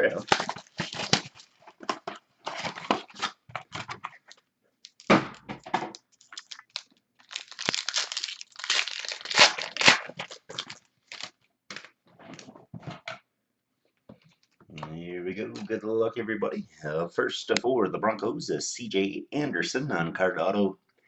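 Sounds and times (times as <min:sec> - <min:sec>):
plastic wrapping crinkling and tearing: 0:00.0 - 0:05.1, 0:05.9 - 0:12.0.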